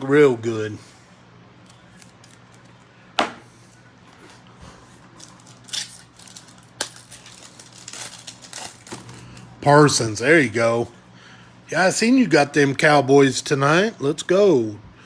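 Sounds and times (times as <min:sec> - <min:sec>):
faint card handling noise: 0:01.6 - 0:09.5
wrapper rustle: 0:01.7 - 0:02.8, 0:05.0 - 0:09.5.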